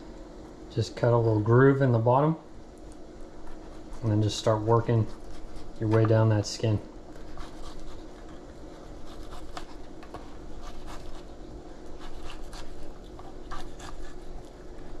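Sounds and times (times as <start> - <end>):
knife scraping fish skin: 8.8 - 14.5.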